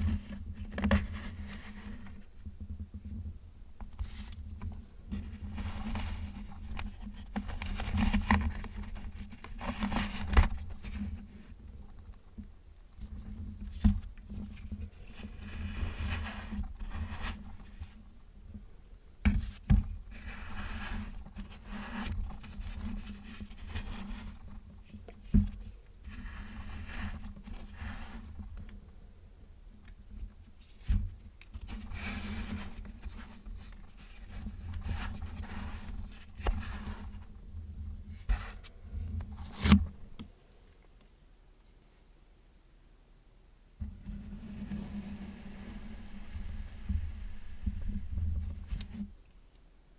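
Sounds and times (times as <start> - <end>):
gritty scraping of sand: 43.8 - 49.1.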